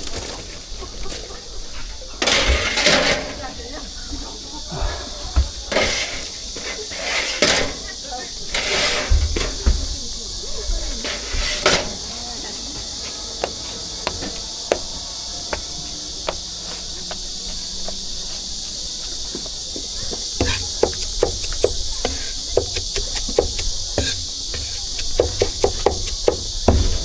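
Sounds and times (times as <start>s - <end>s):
high-pitched insect drone: 0.0s - 27.0s
sharp knocks: 20.4s - 27.0s.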